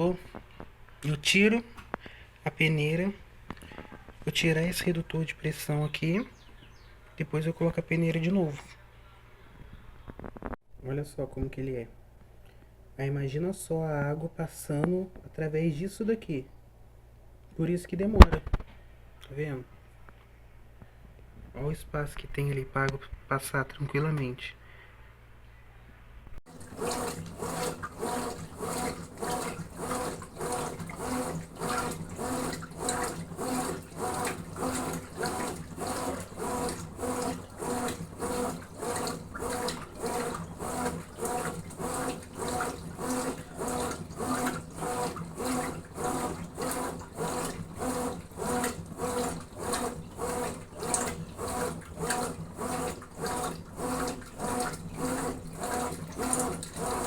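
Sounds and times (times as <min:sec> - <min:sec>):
washing machine agitator sloshing water: 0:26.4 - 0:57.0.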